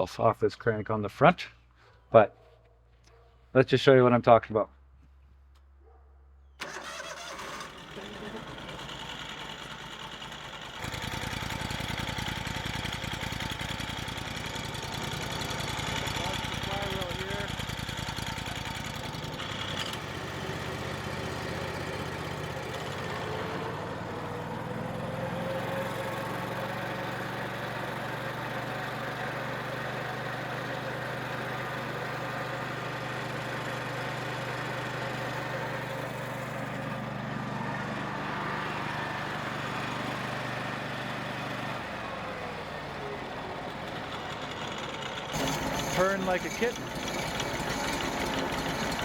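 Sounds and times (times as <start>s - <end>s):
sawmill engine running: 6.6s - 49.0s
flywheel whine: 44.3s - 49.0s.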